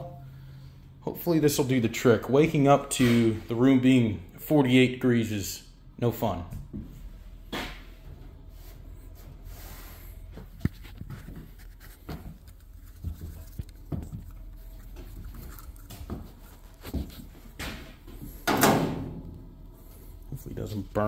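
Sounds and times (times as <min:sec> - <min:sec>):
steady low hum: 0:05.6 - 0:21.0.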